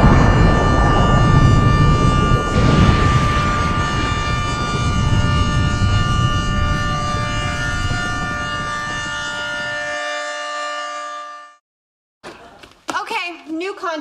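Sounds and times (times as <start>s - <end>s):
explosion deep rumble: 0.0s - 10.0s.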